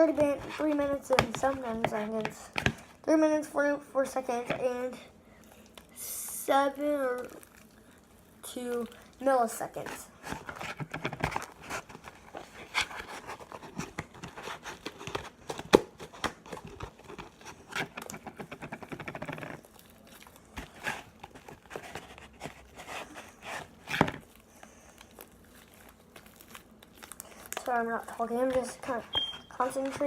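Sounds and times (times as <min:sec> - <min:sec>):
hands squishing sticky slime: 0:05.4 - 0:10.8, 0:16.8 - 0:30.0.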